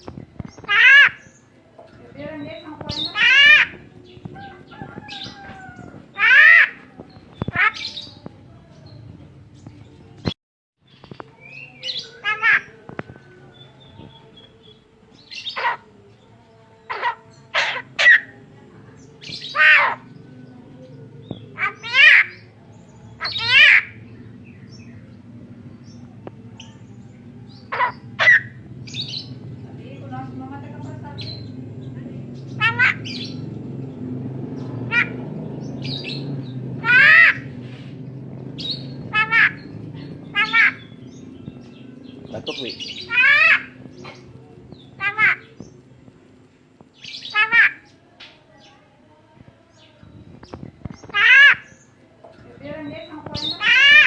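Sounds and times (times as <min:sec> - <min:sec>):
myna bird calls: 0:00.0 - 0:09.0, 0:10.9 - 0:16.0, 0:16.8 - 0:48.8, 0:49.7 - 0:54.0
myna harsh calls: 0:02.4 - 0:06.9, 0:19.3 - 0:20.2, 0:27.5 - 0:29.3, 0:32.4 - 0:33.5, 0:34.9 - 0:37.6, 0:38.6 - 0:41.2, 0:42.5 - 0:45.7, 0:51.1 - 0:51.8, 0:52.6 - 0:54.0
steady low hum: 0:17.3 - 0:47.9.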